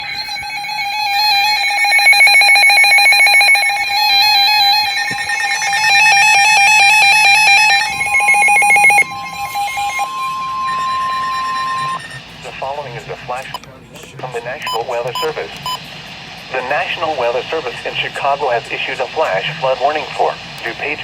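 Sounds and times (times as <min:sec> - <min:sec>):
pulsing electronic alarm tones: 0:00.0 - 0:12.8
steady warning tone: 0:00.0 - 0:21.0.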